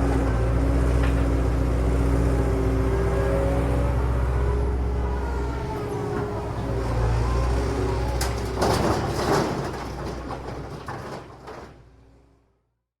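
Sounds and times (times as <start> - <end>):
diesel engine droning: 0.0 - 11.6
metallic clanks and rattles: 8.1 - 11.8.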